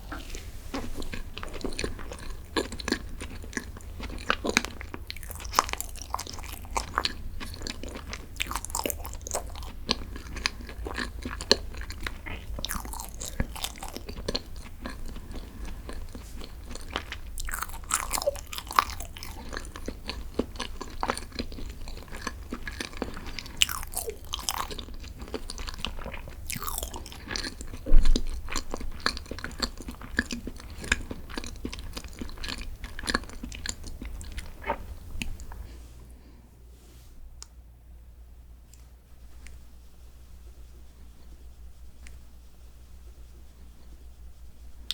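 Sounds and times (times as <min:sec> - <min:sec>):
chewing and biting: 0:00.1 - 0:35.6.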